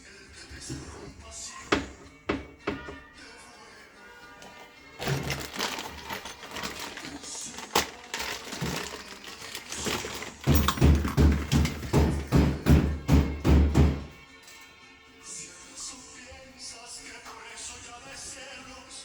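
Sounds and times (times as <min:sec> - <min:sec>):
clatter and knocks of hand work: 0:00.5 - 0:03.2, 0:04.4 - 0:14.3
heavy thumps: 0:05.0 - 0:14.2.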